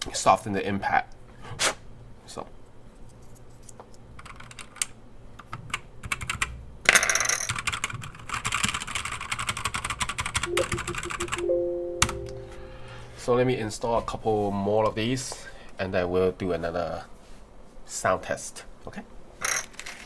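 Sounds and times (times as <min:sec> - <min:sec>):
typing on mechanical keyboard: 0:04.2 - 0:11.4
short steady tones: 0:10.5 - 0:13.4.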